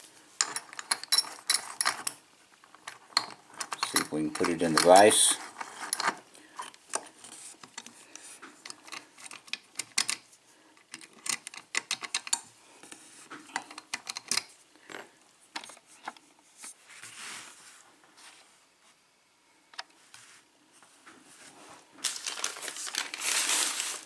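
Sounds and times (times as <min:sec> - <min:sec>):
metal lock clicks and clatter: 0:00.4 - 0:05.2, 0:11.0 - 0:12.4, 0:13.6 - 0:14.5.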